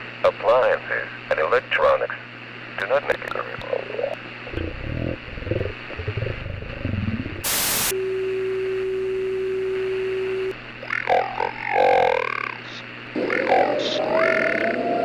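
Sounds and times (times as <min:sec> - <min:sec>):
steady low tone: 0:04.4 - 0:12.1
zombie-like growling and groaning: 0:04.5 - 0:07.3
burst of static: 0:07.2 - 0:14.8.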